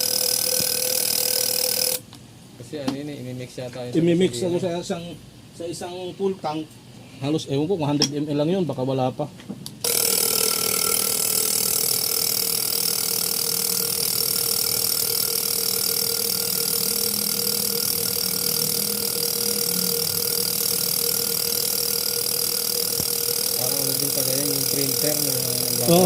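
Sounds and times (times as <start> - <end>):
machine buzzing hum: 0.0 - 2.1, 9.8 - 26.0.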